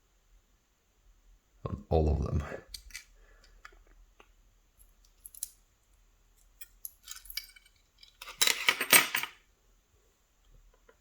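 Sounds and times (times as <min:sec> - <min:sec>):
small metal parts clinking: 0:05.1 - 0:05.6, 0:06.4 - 0:09.4.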